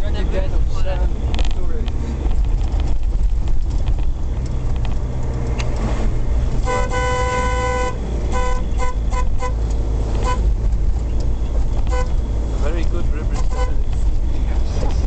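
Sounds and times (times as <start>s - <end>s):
engine and road noise rumble: 0.0s - 15.0s
vehicle horn honking: 6.6s - 9.6s, 10.2s - 10.5s, 11.9s - 12.2s, 13.4s - 13.8s.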